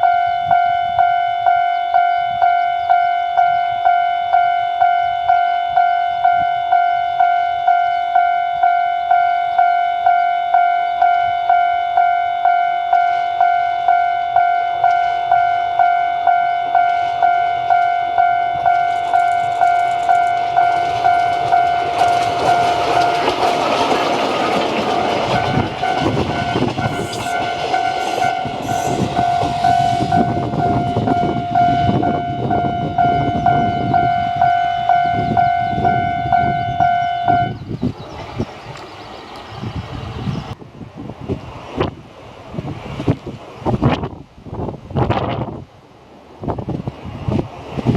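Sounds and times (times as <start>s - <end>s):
diesel locomotive engine: 0.0s - 43.8s
train wheel clatter: 18.5s - 32.1s, 37.3s - 40.6s.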